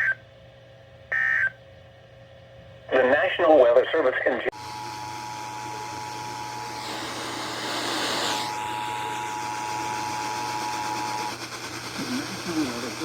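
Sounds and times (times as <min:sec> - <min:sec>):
radio hiss: 0:02.9 - 0:04.6, 0:05.6 - 0:09.3, 0:10.4 - 0:13.0.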